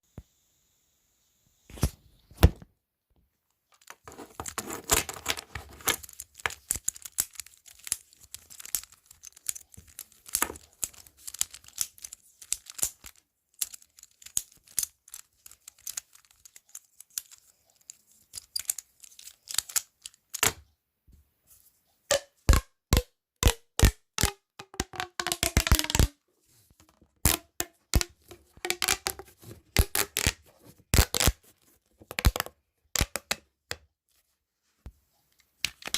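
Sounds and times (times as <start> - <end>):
fidget toys crackling clicks: 5.8 - 20.6, 22.1 - 26.1, 27.2 - 30.4.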